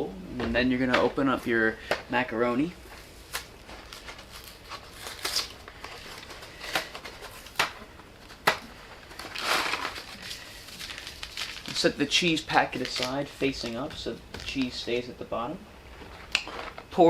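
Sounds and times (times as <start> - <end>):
cardboard box crinkling: 3.7 - 7.6, 8.9 - 12.0.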